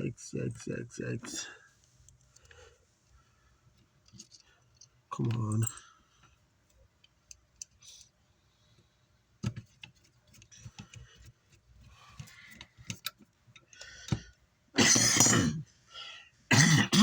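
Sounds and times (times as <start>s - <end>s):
tools clicking and tapping: 12.2s - 14.4s.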